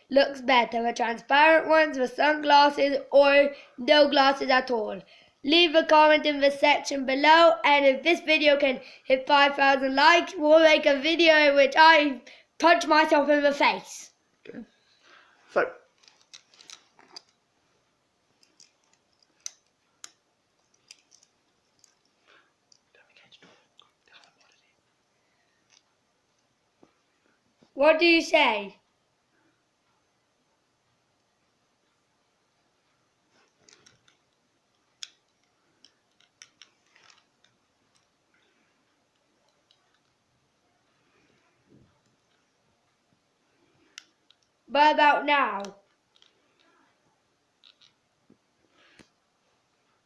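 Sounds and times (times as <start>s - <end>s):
soft rustles: 14.8s - 26.0s, 35.3s - 40.2s
faint handling clicks and taps: 18.3s - 24.7s, 32.9s - 40.2s, 45.5s - 46.8s.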